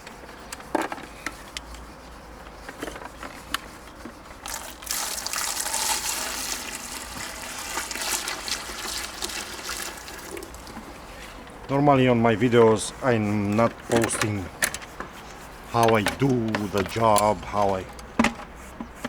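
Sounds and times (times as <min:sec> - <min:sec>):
water splashing onto a wall: 0:04.4 - 0:11.0.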